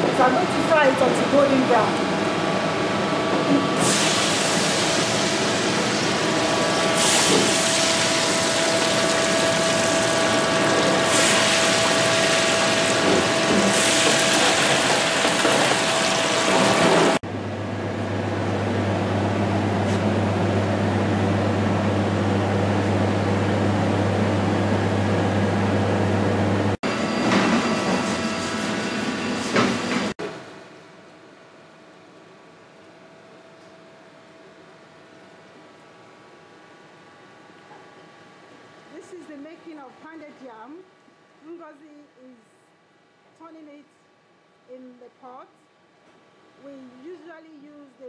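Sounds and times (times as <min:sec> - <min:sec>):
low mechanical hum: 0:00.0 - 0:48.0
fish frying in hot oil: 0:03.8 - 0:17.2.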